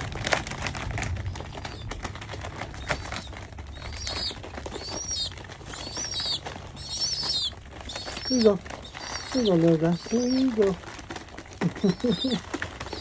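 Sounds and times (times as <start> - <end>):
young pigeon squeaking: 1.3 - 2.0, 2.7 - 13.0.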